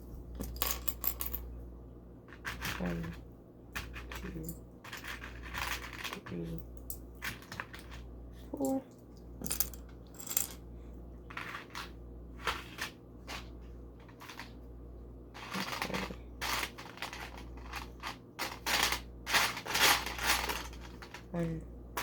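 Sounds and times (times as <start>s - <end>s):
plastic bricks clicking and clattering: 15.4s - 21.3s.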